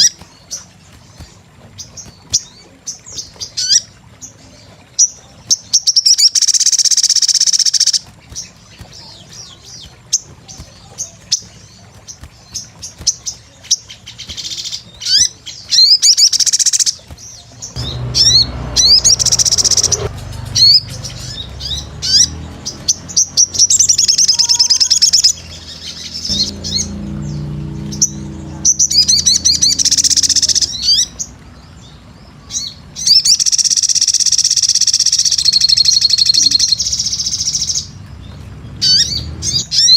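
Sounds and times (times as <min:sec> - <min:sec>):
bird twittering chirps: 0:00.0 - 0:39.9
low rumble: 0:17.6 - 0:23.8, 0:25.3 - 0:31.8.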